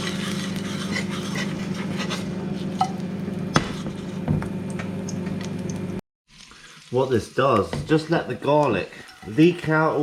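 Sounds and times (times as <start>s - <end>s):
garlic sizzling in a frying pan: 6.3s - 10.0s.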